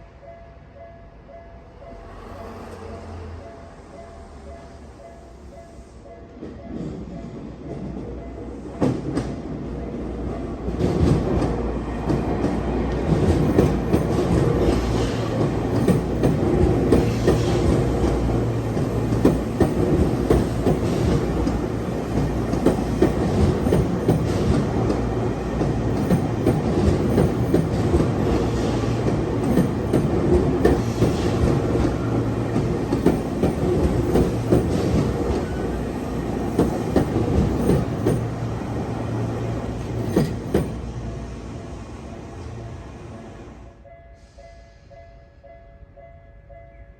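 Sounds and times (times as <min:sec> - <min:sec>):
train running rumble: 0:02.1 - 0:43.7
train wheels clicking over rail joints: 0:10.7 - 0:41.0.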